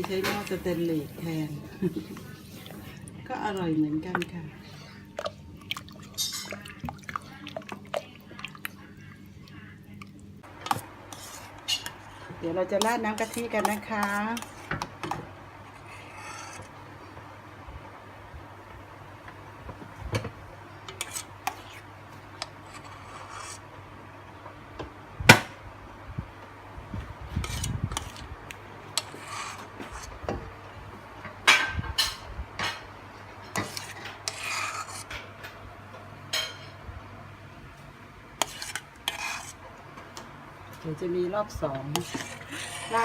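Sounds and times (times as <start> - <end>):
spoon scraping metal pot: 11.1 - 12.2, 12.8 - 14.8, 15.6 - 16.7, 20.9 - 21.8, 22.4 - 23.6, 27.4 - 28.3, 29.0 - 30.1, 33.4 - 35.2, 38.4 - 39.6, 41.7 - 43.0.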